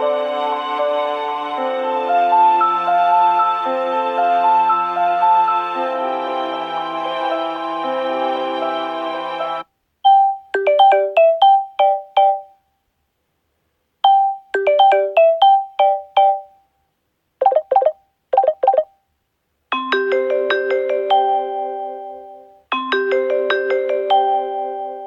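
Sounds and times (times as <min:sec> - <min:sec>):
ringtone melody: 0:10.1 - 0:12.6, 0:14.0 - 0:16.6, 0:17.4 - 0:18.9, 0:19.7 - 0:25.0.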